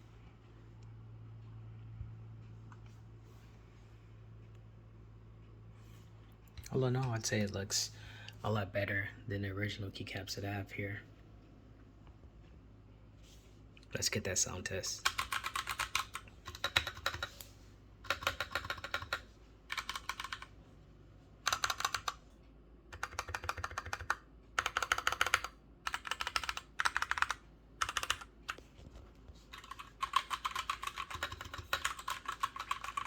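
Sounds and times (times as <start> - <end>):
mechanical keyboard typing: 15.0 - 17.4, 18.0 - 20.5, 21.5 - 22.2, 22.9 - 28.7, 29.5 - 33.0.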